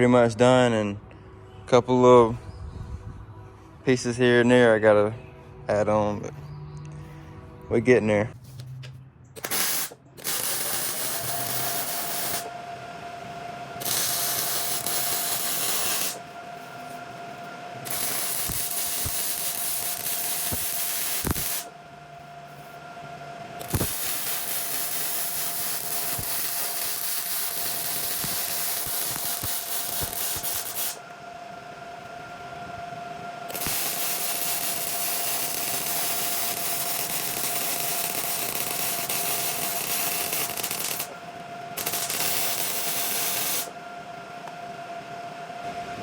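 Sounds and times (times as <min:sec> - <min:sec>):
faint steady hum: 0:00.0 - 0:07.9, 0:09.3 - 0:46.0
welding arc crackling: 0:09.4 - 0:12.5, 0:13.8 - 0:16.2, 0:17.8 - 0:21.7, 0:23.6 - 0:31.1, 0:33.5 - 0:41.2, 0:41.8 - 0:43.7.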